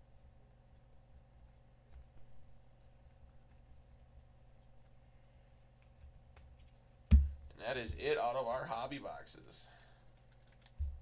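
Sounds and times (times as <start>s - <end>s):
low electrical hum: 0.0s - 11.0s
trading cards rustling: 9.8s - 11.0s.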